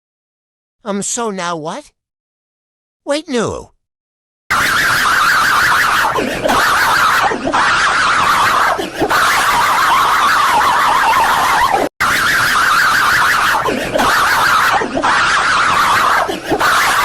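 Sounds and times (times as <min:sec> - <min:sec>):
distorted siren-like blaring: 0:04.5 - 0:17.0.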